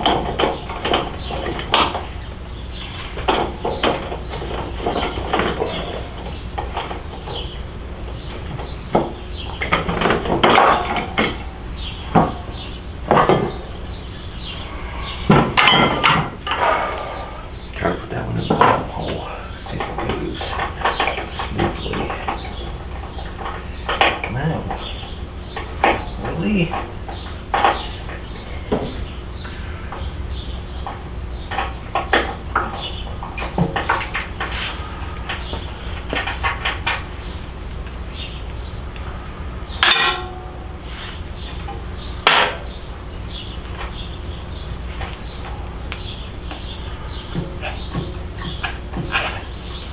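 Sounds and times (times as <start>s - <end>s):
metal tools clanking: 0.0s - 30.2s, 30.8s - 37.4s, 39.8s - 42.8s, 46.4s - 49.9s
steady low hum: 0.0s - 49.9s
metal tools and bolts clinking: 15.2s - 17.4s, 32.6s - 34.5s.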